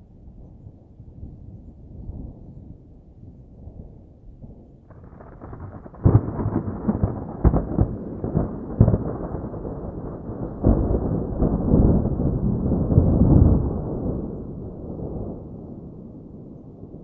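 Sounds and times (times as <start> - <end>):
thunder rumbling: 3.6 - 17.0
thunder clap: 4.9 - 16.1
sharp thunder cracks: 4.9 - 17.0.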